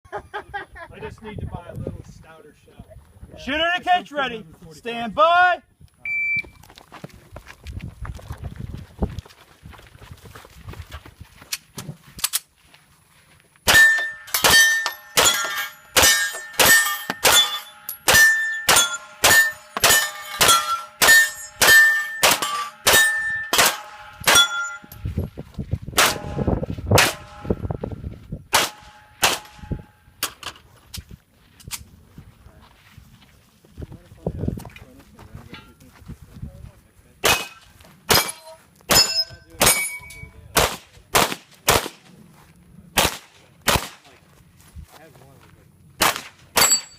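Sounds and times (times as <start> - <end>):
pistol shots: 13.7 - 24.8, 26.0 - 27.6, 28.5 - 29.9, 37.2 - 39.9, 40.6 - 42.0, 43.0 - 44.1, 46.0 - 46.9
steel plate clanging: 13.7 - 25.0, 37.4 - 40.3, 46.6 - 46.9.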